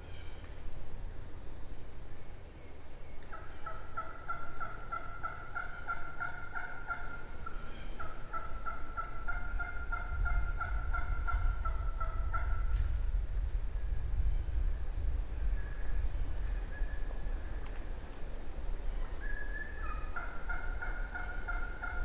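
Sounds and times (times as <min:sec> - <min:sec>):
wild turkey yelping: 0:03.3 - 0:12.7, 0:19.0 - 0:22.0.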